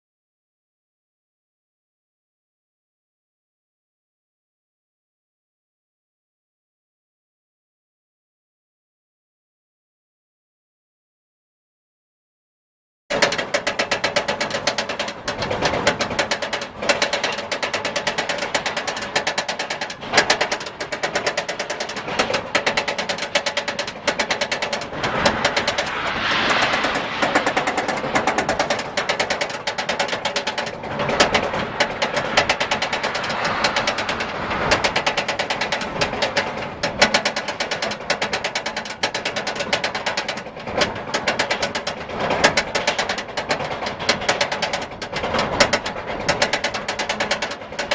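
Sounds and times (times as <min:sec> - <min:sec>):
roller coaster lift chain clacking: 0:13.1 - 0:47.9
rushing noise: 0:14.3 - 0:37.7.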